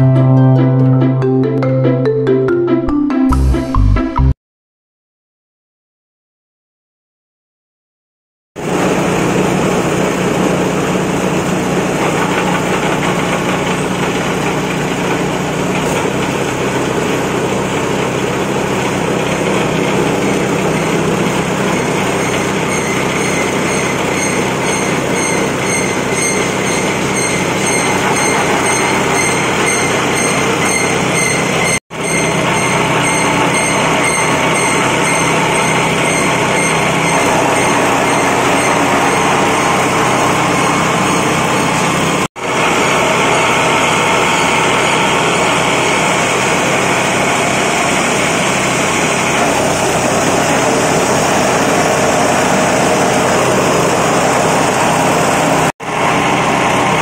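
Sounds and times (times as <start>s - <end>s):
chopper machine mechanical din: 8.6s - 57.0s.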